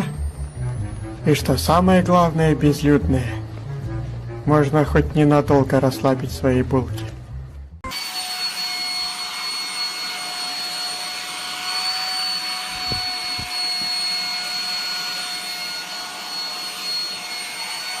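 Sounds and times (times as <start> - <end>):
motor whine: 7.9 - 18.0.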